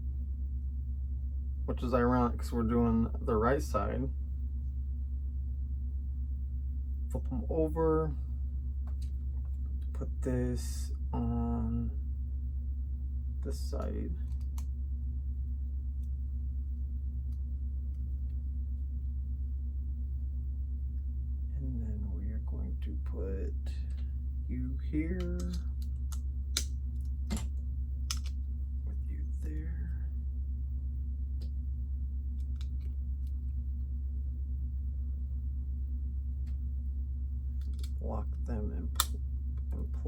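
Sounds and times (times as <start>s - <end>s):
low electrical hum: 0.0s - 40.0s
plastic pieces clicking together: 28.1s - 28.3s, 37.6s - 37.9s.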